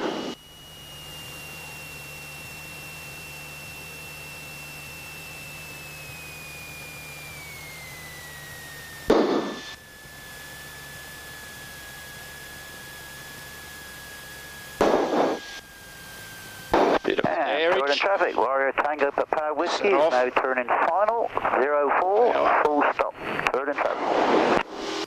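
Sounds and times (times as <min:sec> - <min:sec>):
aircraft engine and airflow hiss: 0:00.0 - 0:25.0
faint high whine: 0:00.0 - 0:25.0
radio burst: 0:09.1 - 0:09.8, 0:14.8 - 0:15.6, 0:16.7 - 0:24.8.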